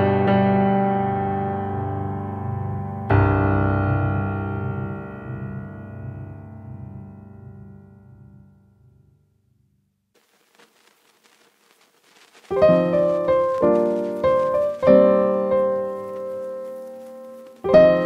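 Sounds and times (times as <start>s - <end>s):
piano chords: 0.0s - 8.9s, 12.5s - 18.0s.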